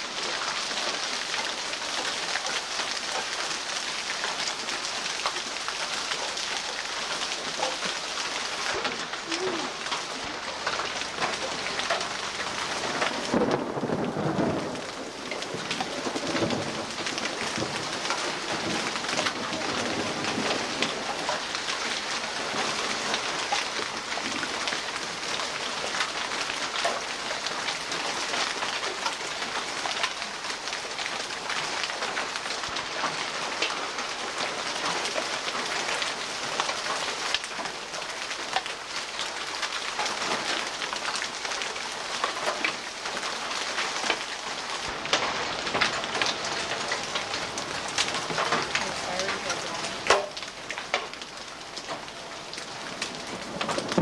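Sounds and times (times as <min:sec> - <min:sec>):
heavy rain pouring: 0:00.0 - 0:54.0
low thunder rumble: 0:08.8 - 0:23.4, 0:51.9 - 0:54.0.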